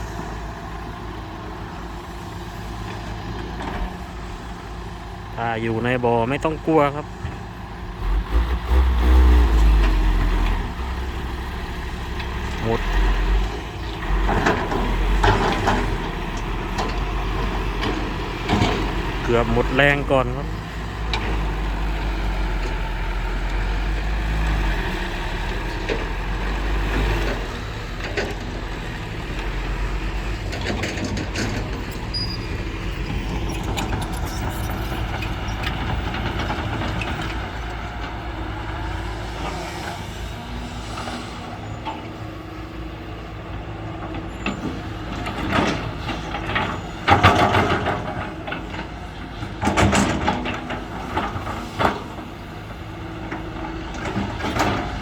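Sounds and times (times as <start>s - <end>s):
heavy diesel engines rumbling: 0.0s - 55.0s.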